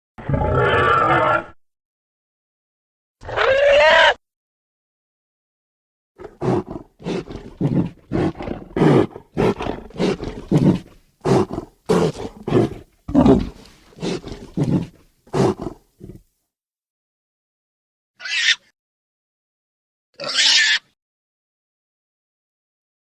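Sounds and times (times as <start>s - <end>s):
harsh dinosaur roaring calls: 0.2s - 1.6s, 3.2s - 4.1s, 6.3s - 16.2s.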